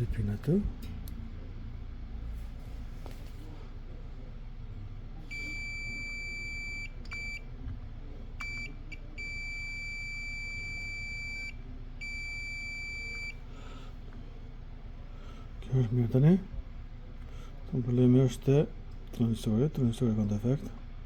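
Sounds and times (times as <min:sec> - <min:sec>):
multimeter beeping: 0:05.3 - 0:07.4, 0:08.4 - 0:13.4.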